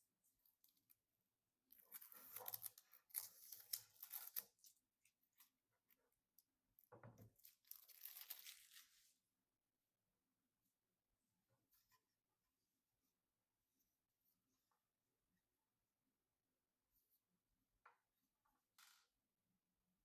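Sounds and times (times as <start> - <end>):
plastic tearing and crinkling: 1.9 - 4.7, 7.4 - 9.0.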